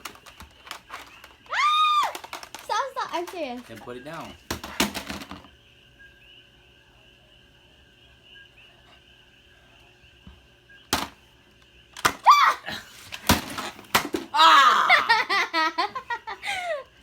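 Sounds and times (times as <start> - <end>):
toy blasters popping: 0.0 - 3.7
person shrieking: 14.3 - 15.2
breathless laughter: 14.7 - 17.0.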